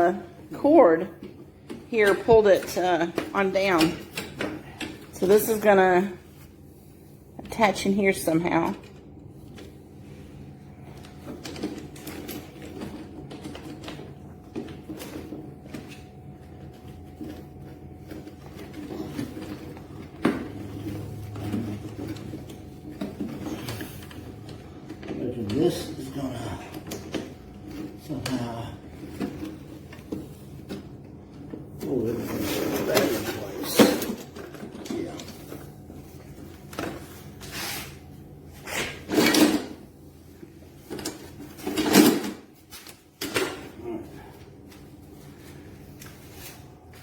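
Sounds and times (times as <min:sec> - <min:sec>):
plastic parts rustling and knocking: 0:40.4 - 0:43.8.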